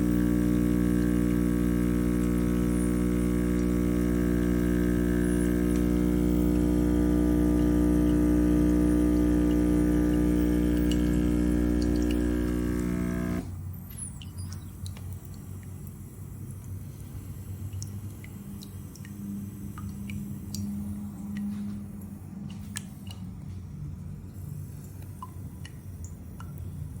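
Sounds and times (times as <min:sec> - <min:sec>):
espresso machine pump humming: 0:00.0 - 0:14.1
faint drips: 0:05.5 - 0:27.0.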